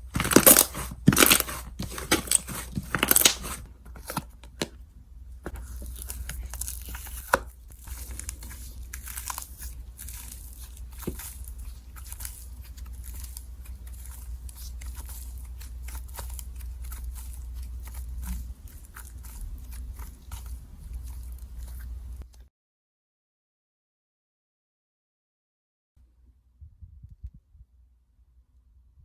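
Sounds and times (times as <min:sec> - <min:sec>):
slime crackling and popping: 0:00.0 - 0:03.6, 0:05.6 - 0:22.3.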